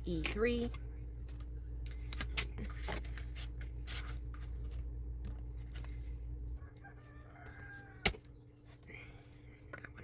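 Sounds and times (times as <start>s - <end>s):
steady low hum: 0.0s - 10.0s
light rustling of parts: 0.2s - 6.6s.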